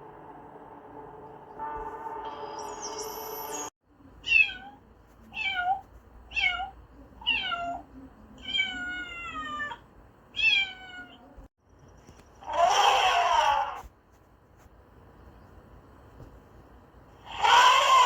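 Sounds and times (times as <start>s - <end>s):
cat meowing: 8.4s - 9.8s, 10.4s - 11.3s, 17.3s - 18.0s.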